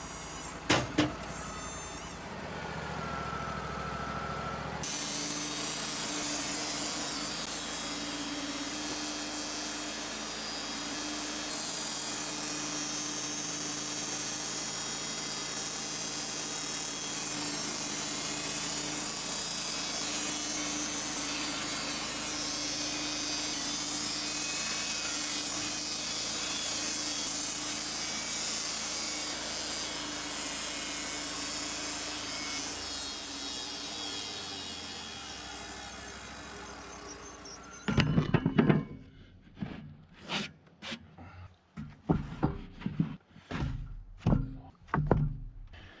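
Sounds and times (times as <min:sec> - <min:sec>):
band saw cutting wood: 0:00.0 - 0:02.4, 0:04.8 - 0:38.2
sawmill humming under load: 0:00.0 - 0:38.5.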